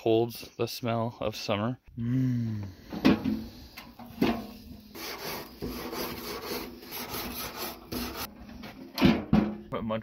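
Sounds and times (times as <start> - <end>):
rasping scraping strokes: 4.4 - 8.3.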